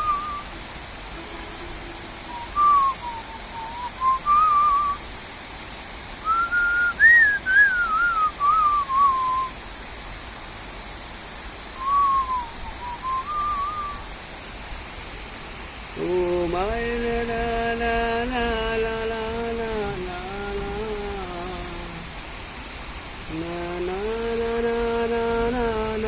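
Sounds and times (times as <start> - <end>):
person whistling a melody: 0.0 - 0.5, 2.3 - 5.0, 6.2 - 9.6, 11.8 - 14.0
rain hissing: 0.0 - 26.0.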